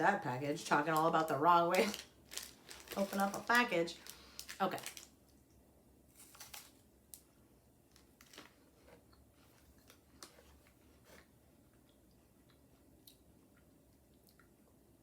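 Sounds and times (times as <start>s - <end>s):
snack wrapper crinkling: 0.9s - 5.4s, 6.1s - 7.3s, 7.9s - 11.3s.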